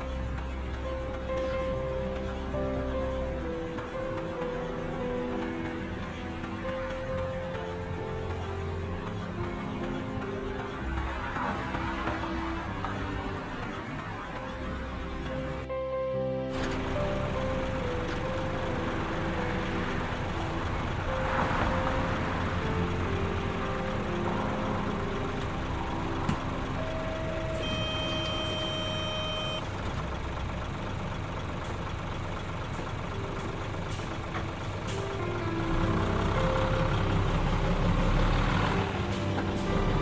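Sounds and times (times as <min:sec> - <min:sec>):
combine harvester droning: 0:00.0 - 0:40.0
high electronic tone: 0:26.7 - 0:29.7.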